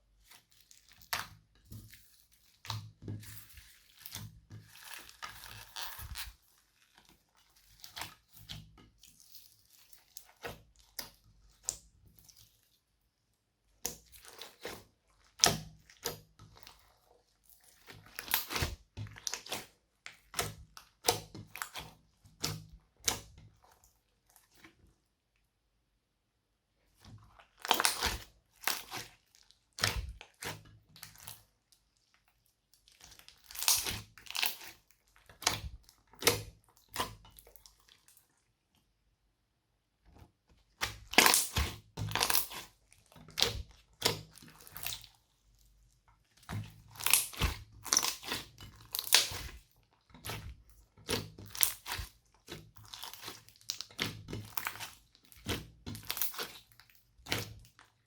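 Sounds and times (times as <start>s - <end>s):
slime crackling and popping: 17.8s - 21.8s, 33.0s - 37.6s, 40.8s - 45.2s, 46.4s - 49.6s, 50.2s - 57.8s.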